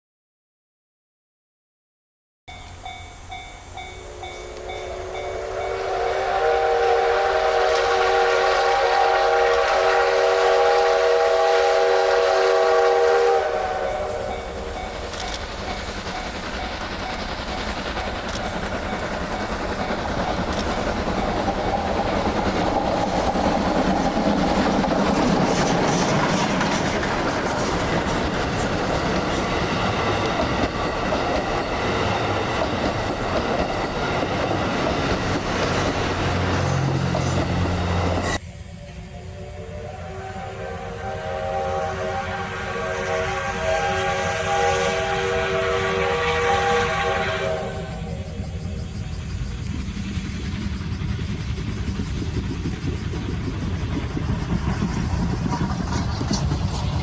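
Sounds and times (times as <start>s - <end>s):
train running past: 2.5s - 57.0s
steam locomotive whistle: 3.7s - 48.8s.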